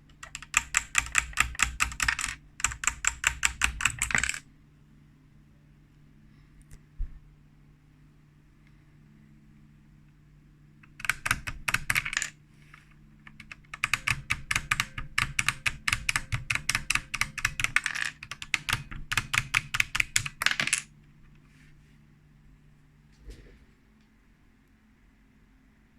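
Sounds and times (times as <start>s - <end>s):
mechanical keyboard typing: 0.0s - 4.4s, 10.8s - 12.4s, 13.2s - 20.9s.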